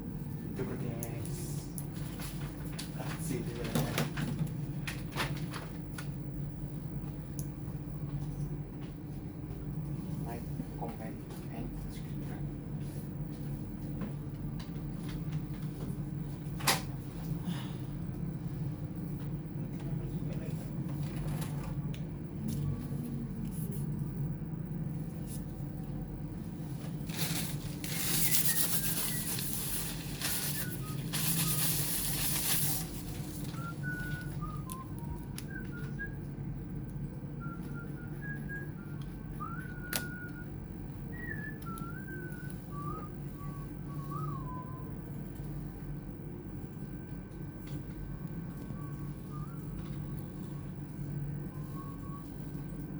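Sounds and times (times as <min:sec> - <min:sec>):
steady low hum: 0:04.4 - 0:52.9
person whistling a tune: 0:28.0 - 0:36.3, 0:37.4 - 0:40.5, 0:41.1 - 0:45.0, 0:48.8 - 0:49.8, 0:51.5 - 0:52.3.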